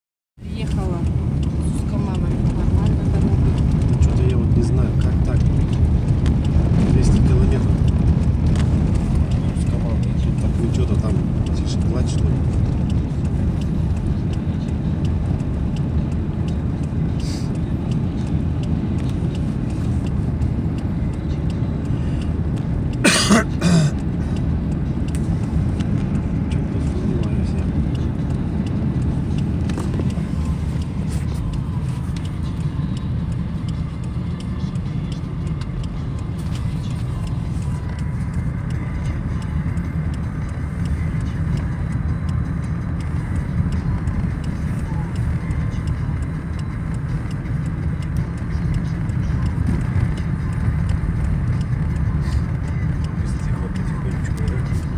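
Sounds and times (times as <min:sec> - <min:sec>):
car engine and road noise: 0:00.4 - 0:54.9
person coughing: 0:23.0 - 0:24.0
faint ticks: 0:24.0 - 0:26.9, 0:27.9 - 0:54.9.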